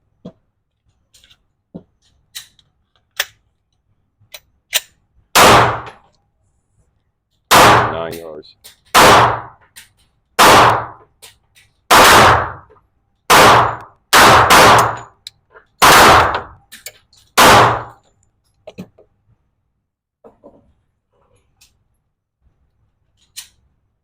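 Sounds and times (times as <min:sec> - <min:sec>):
pistol shots with ringing echo: 0:05.4 - 0:06.0, 0:07.5 - 0:08.2, 0:08.9 - 0:09.6, 0:10.4 - 0:11.0, 0:11.9 - 0:12.7, 0:13.3 - 0:15.1, 0:15.8 - 0:16.6, 0:17.4 - 0:17.9.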